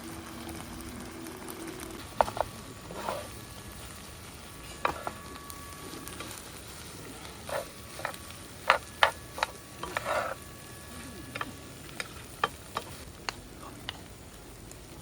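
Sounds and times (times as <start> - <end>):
steady background hiss: 0.0 - 15.0
utensils scraping dishes: 7.4 - 10.4.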